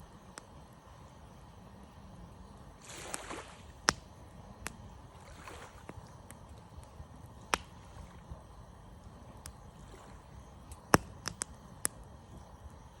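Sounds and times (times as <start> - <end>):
campfire wood crackling: 0.0 - 13.0
low fire rumble: 0.0 - 13.0
sharp fire pops: 2.9 - 5.0, 5.8 - 8.0, 10.6 - 12.1.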